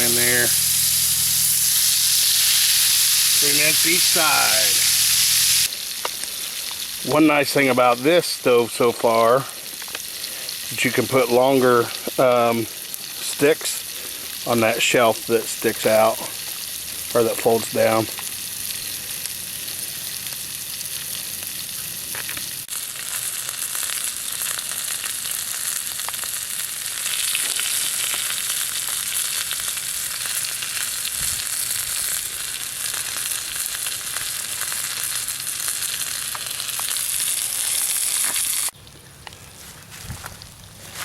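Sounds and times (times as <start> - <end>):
food sizzling in oil: 0.0 - 38.8
oil popping and crackling: 0.0 - 41.0.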